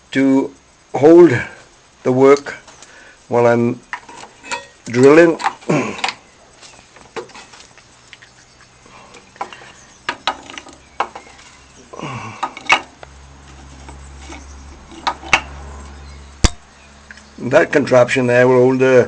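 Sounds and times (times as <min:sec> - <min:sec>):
low steady hum: 0:00.0 - 0:19.0
small hard objects knocking: 0:03.9 - 0:08.4, 0:09.0 - 0:15.6.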